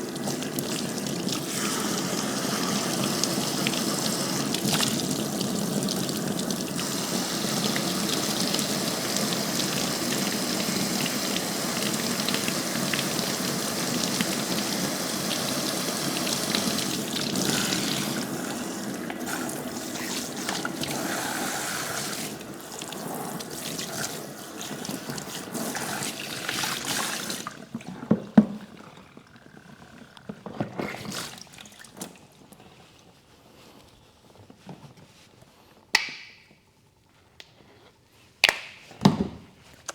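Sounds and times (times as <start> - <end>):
tap water splashing: 0.1 - 29.0, 30.4 - 32.2.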